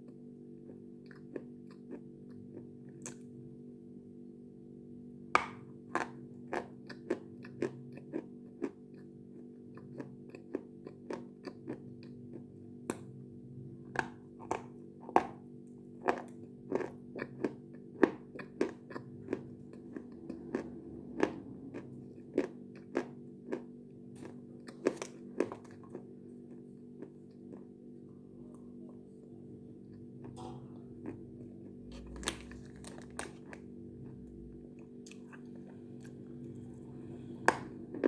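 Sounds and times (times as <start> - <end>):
steady low hum: 12.2 - 38.0
person crunching something hard: 31.8 - 35.4.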